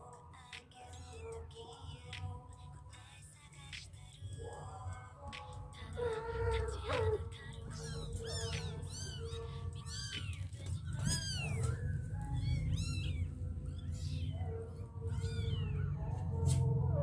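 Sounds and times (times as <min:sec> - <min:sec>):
kittens mewing: 0:05.9 - 0:16.8.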